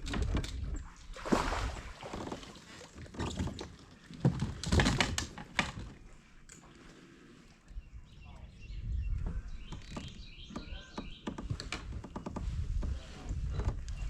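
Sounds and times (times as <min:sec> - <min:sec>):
small birds chirping: 0:07.6 - 0:14.0.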